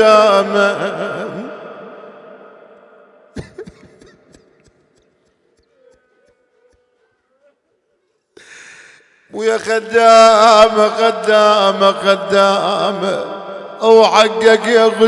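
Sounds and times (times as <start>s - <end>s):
person chanting: 0.0s - 8.1s, 9.3s - 15.0s.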